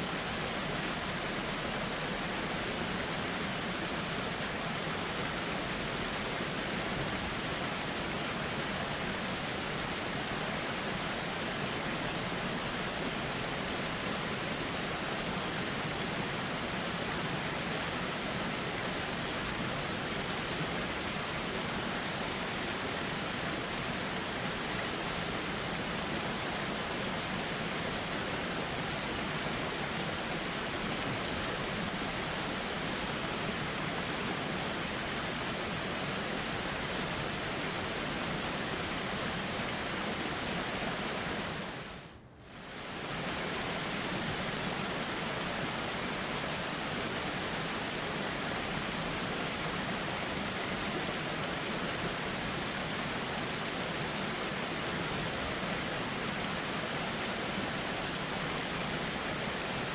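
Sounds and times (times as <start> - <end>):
river rushing: 0.0 - 59.9.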